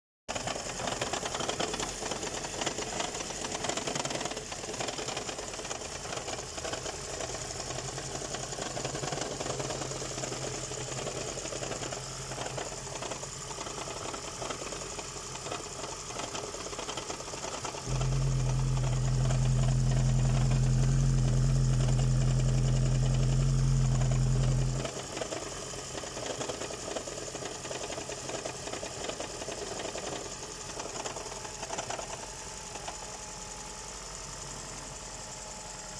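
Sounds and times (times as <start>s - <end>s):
car engine knocking: 0.3s - 33.0s
loud low steady hum: 17.8s - 24.9s.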